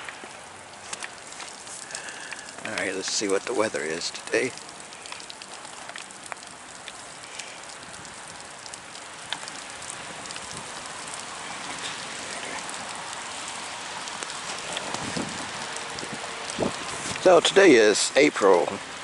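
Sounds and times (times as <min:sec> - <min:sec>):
drops tapping: 0:00.0 - 0:11.2
rain and wet snow hissing: 0:00.0 - 0:19.0.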